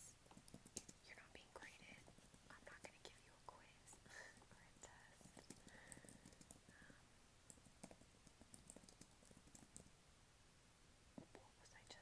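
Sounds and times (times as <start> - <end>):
keyboard typing: 0.3 - 1.0, 5.2 - 6.7, 7.5 - 9.9.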